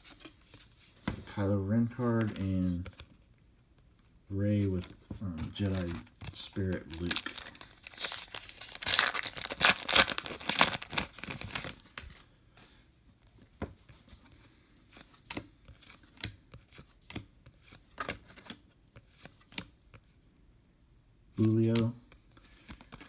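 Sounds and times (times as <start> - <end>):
foil wrapper tearing and crinkling: 5.6 - 12.0.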